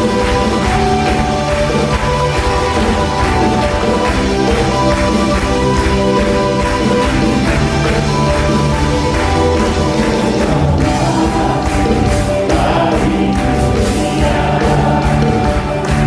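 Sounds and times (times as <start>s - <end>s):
backing band playing: 0.0s - 16.0s
choir singing gospel song: 9.2s - 16.0s.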